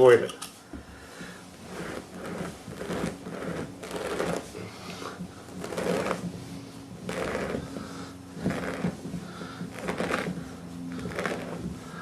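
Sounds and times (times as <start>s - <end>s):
blade rasping through carpet: 1.0s - 12.0s.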